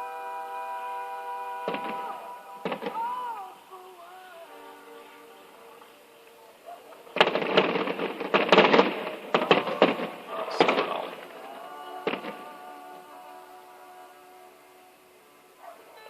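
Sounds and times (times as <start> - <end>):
background music: 0.0 - 16.0
fireworks bangs and crackles: 1.7 - 3.4, 7.0 - 11.4, 12.0 - 12.6.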